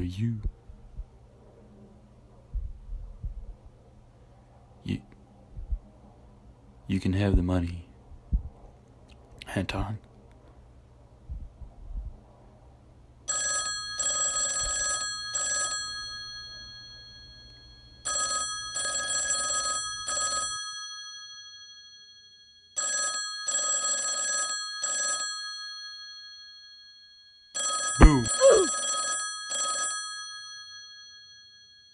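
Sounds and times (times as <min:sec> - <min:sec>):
telephone ringing: 0:13.3 - 0:31.9.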